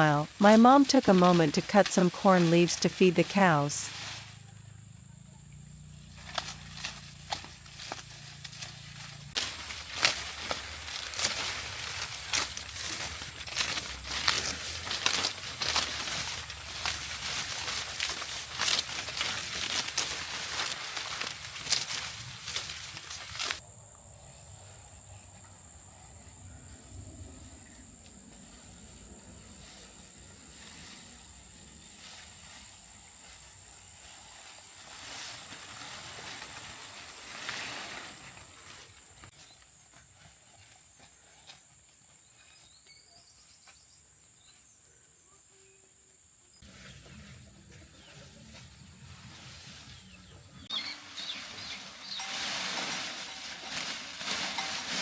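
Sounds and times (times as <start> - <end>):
rural background noise: 0.0 - 55.0.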